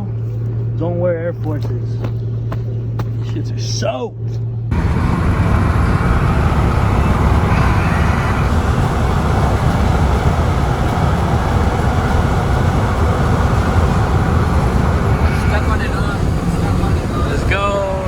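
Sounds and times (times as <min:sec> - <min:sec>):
moving vehicle rumble: 0:04.2 - 0:18.0.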